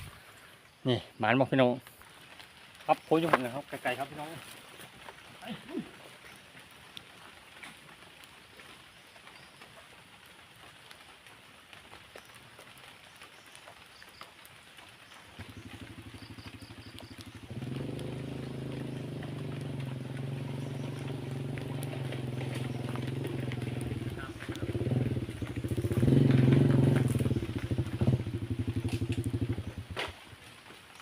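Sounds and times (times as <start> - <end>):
small engine revving: 15.4 - 30.2.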